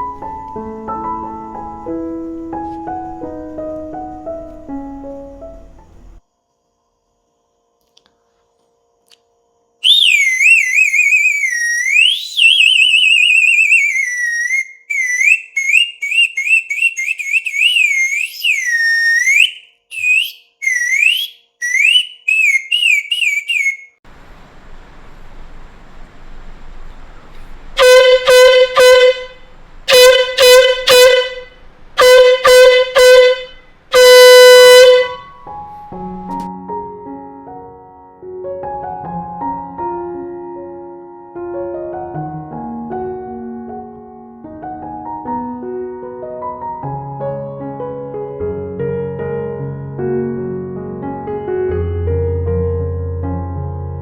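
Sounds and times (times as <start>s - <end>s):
high wavering toy horn toots: 9.8s - 24.0s, 27.8s - 35.4s
steady hiss: 24.1s - 27.8s, 29.3s - 29.9s, 31.5s - 32.0s
low horn blasts: 27.0s - 36.5s.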